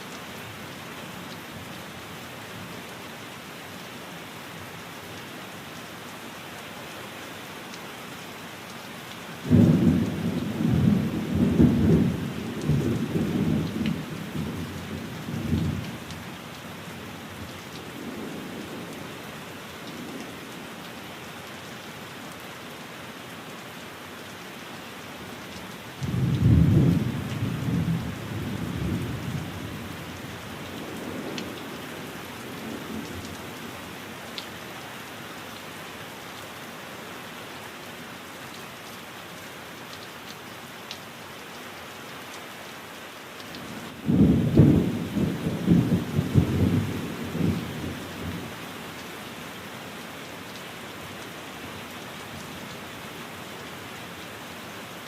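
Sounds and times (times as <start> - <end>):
rain hissing: 7.9 - 22.4.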